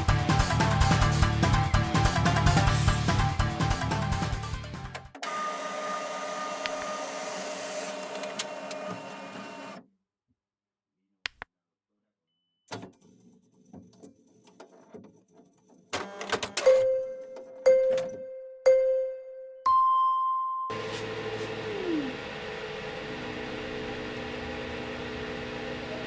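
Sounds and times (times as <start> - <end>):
background music: 0.0 - 5.2
three d printer motors whining: 5.2 - 9.8, 20.7 - 26.0.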